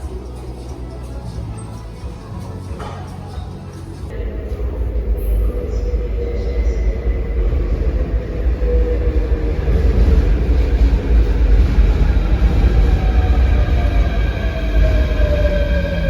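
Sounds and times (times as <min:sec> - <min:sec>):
train rattling: 0:00.0 - 0:16.0
train rumbling: 0:00.0 - 0:16.0.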